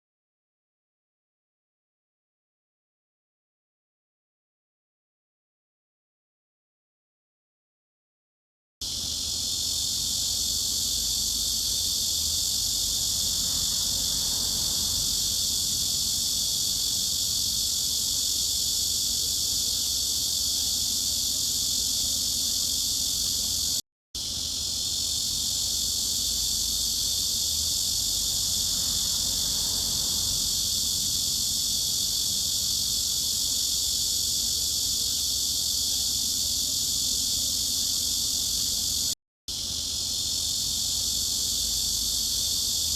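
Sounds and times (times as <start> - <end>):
cicadas buzzing: 8.8 - 42.9.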